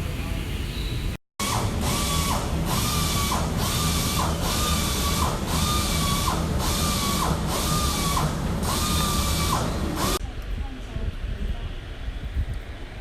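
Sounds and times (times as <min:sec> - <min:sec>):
machine whining in strokes: 0:01.4 - 0:10.2.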